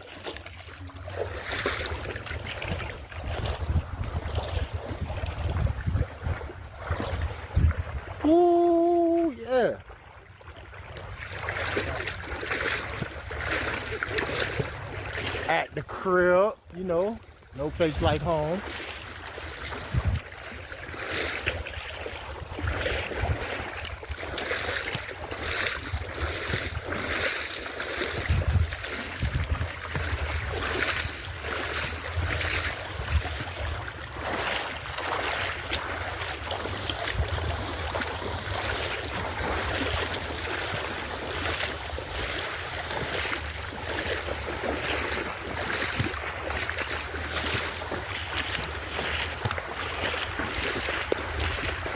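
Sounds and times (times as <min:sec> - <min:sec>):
rushing water: 0:00.0 - 0:51.9
wind rumbling on microphone: 0:00.8 - 0:09.4, 0:16.7 - 0:51.9
gusting wind roar: 0:03.3 - 0:08.2, 0:19.9 - 0:20.3, 0:28.2 - 0:30.6.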